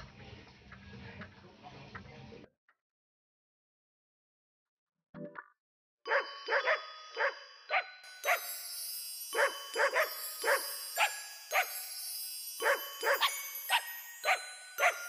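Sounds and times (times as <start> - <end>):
puppy yipping: 12.6 - 15.0.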